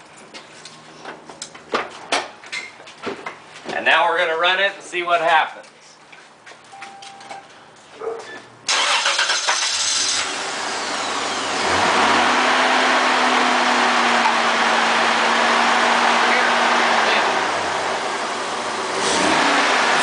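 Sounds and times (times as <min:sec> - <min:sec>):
starter motor cranking: 0:08.7 - 0:10.3
engine fast idle: 0:08.7 - 0:11.7.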